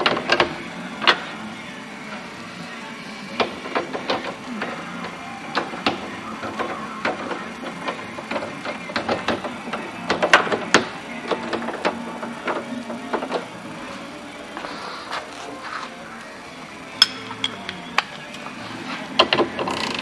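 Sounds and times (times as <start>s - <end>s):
steady low hum: 0.0s - 19.7s
clicks and light knocks on parts: 3.4s - 13.5s.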